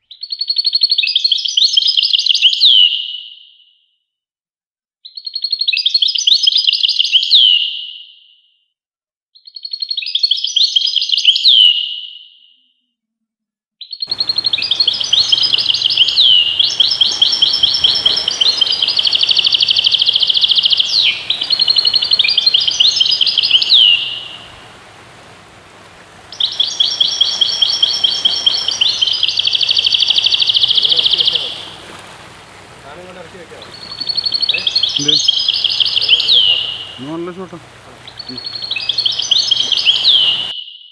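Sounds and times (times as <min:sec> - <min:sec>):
goldfinch singing: 0:14.1 - 0:40.5.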